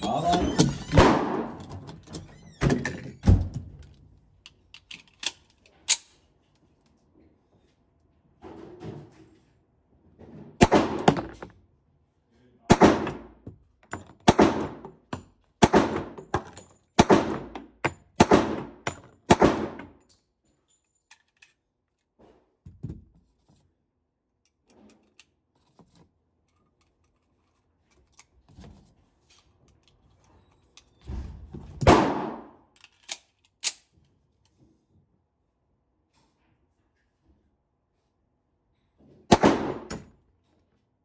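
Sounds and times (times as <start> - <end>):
muffled pistol shots: 10.6 - 11.1, 12.7 - 13.3, 31.9 - 32.6, 39.3 - 39.9.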